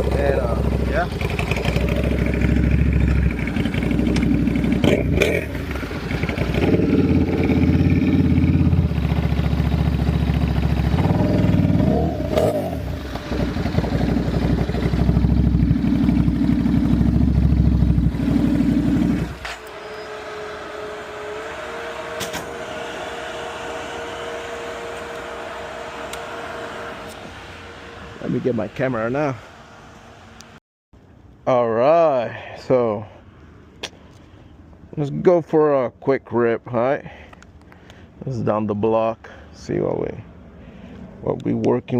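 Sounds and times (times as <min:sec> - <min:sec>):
motorcycle engine idling and revving: 0:00.0 - 0:30.6.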